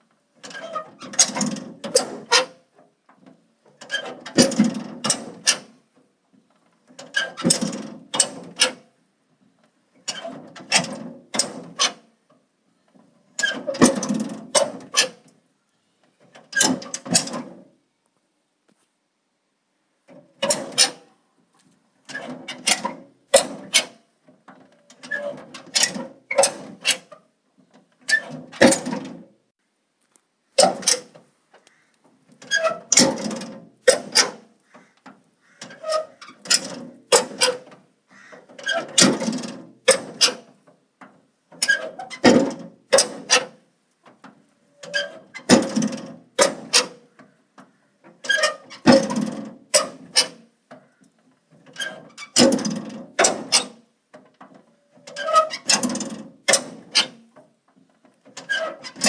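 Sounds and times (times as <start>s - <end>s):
squeaking door hinges: 0.4s - 2.7s, 3.7s - 5.8s, 6.9s - 8.8s, 10.0s - 12.1s, 12.9s - 15.4s, 16.2s - 17.6s, 20.2s - 21.2s, 22.1s - 29.2s, 30.6s - 40.7s, 41.5s - 43.6s, 44.6s - 53.9s, 54.5s - 57.4s, 58.2s - 59.0s.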